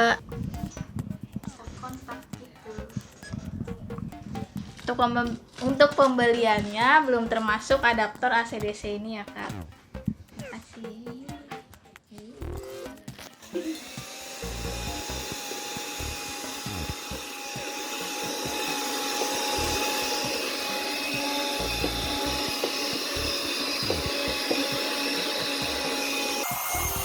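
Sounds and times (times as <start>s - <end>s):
handheld vacuum cleaner running: 13.3s - 27.0s.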